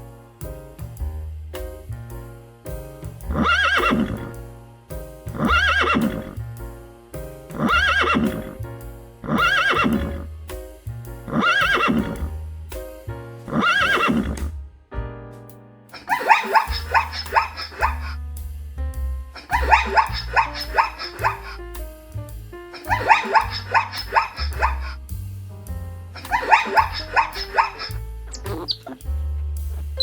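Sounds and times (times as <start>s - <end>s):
background music: 1.6s - 18.2s, 19.0s - 30.0s
horse whinny: 5.5s - 6.3s, 7.6s - 8.5s, 9.3s - 10.2s, 11.4s - 12.2s, 13.5s - 14.4s.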